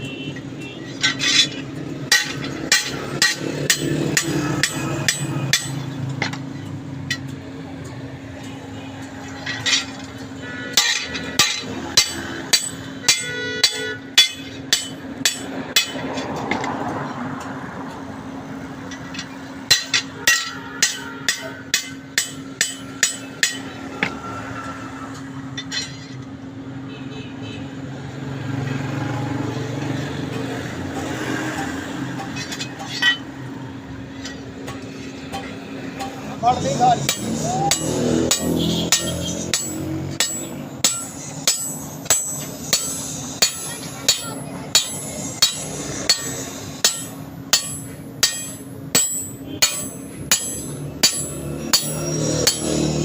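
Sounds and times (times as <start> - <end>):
hammer ringing on steel blade: 10.8 - 16.0, 19.7 - 23.7, 37.0 - 53.0.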